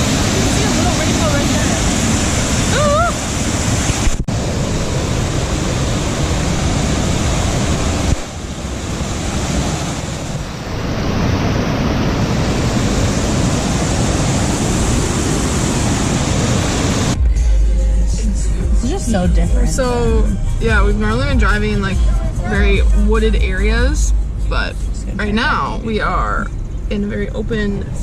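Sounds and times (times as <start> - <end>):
rushing mountain stream: 0.0 - 17.2.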